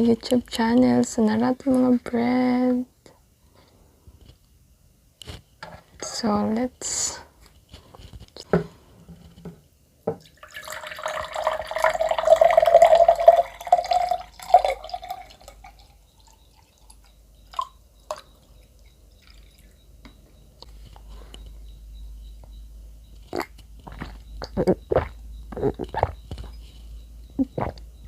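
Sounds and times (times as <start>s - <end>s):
liquid pouring into container: 10.2s - 18.3s.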